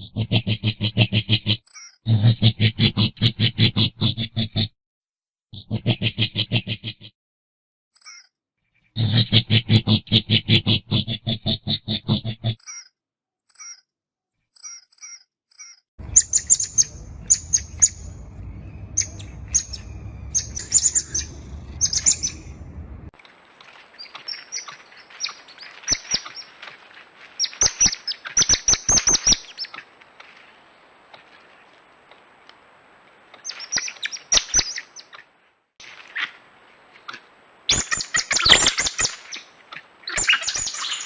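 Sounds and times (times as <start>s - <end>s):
coati high-pitched chirps: 16.0s - 22.8s, 40.1s - 41.0s
low rumble: 16.0s - 23.2s.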